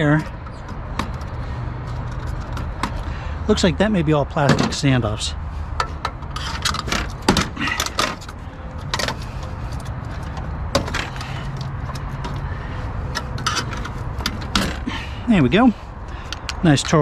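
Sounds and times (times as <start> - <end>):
tools clicking and knocking on plastic: 0.1 - 3.1.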